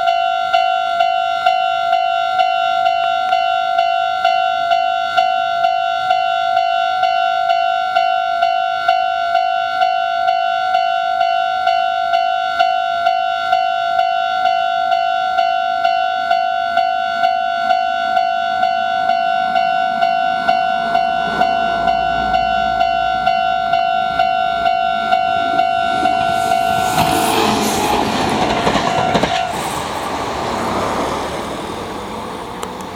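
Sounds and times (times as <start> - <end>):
level crossing bell ringing: 0.0 - 26.9
train rumble: 18.1 - 32.9.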